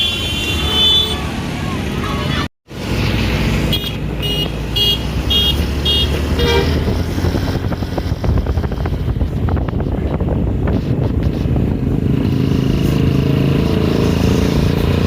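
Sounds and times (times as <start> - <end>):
multi-tone bus horn toots: 0.0 - 1.3, 3.7 - 7.0
bus engine rumble: 0.0 - 15.0.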